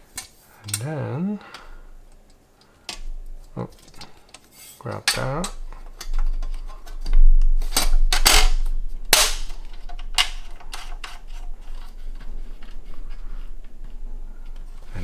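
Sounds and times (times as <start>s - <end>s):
computer case panels clattering: 5.0s - 15.0s.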